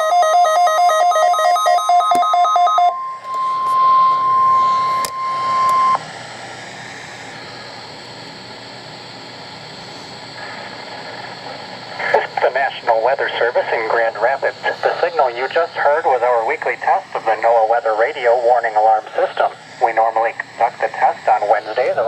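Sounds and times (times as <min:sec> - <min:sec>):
steady warning alarm tone: 0:00.0 - 0:06.0
two-tone warbling alarm: 0:00.0 - 0:06.0
radio static hiss: 0:09.7 - 0:22.0.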